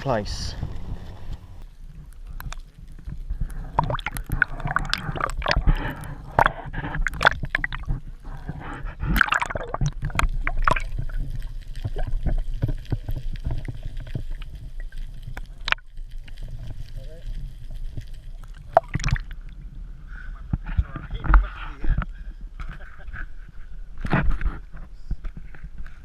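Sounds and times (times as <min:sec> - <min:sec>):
low rumble: 0:00.0 - 0:01.8
small clicks and wet knocks: 0:00.6 - 0:19.6
water splashing and dripping: 0:02.4 - 0:08.0, 0:09.0 - 0:19.6.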